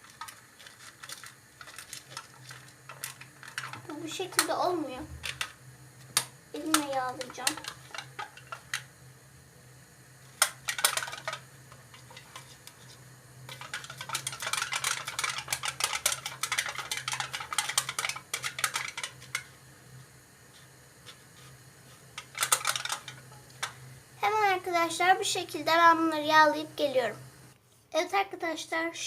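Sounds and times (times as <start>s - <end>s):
crinkling rattles in thin metal: 0.0s - 4.5s, 6.6s - 8.8s, 10.4s - 12.5s, 13.5s - 19.5s, 22.2s - 23.8s.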